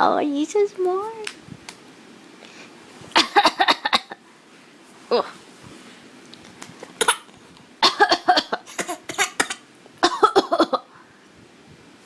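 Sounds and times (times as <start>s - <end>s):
baby coughing: 3.2s - 4.1s, 7.0s - 10.8s.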